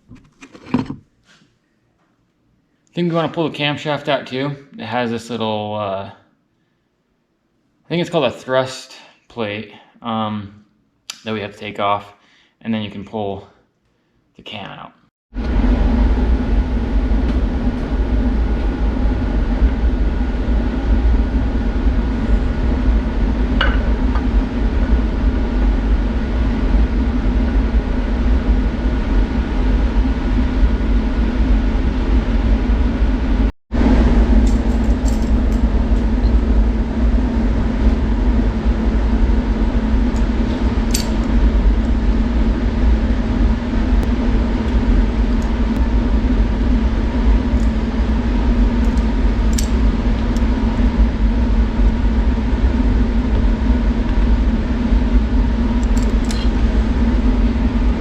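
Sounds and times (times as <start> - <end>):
loud mechanical hum: 15.3 - 58.0.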